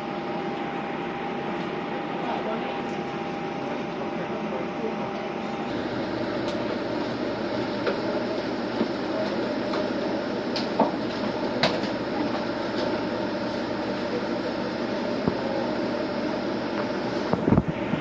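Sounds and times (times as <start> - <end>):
railcar rumbling along track: 0.0 - 18.0.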